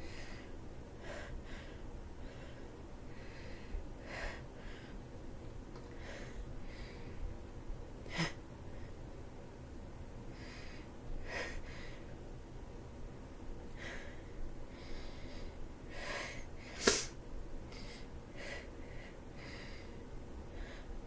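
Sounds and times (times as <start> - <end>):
person sneezing: 16.8 - 17.2.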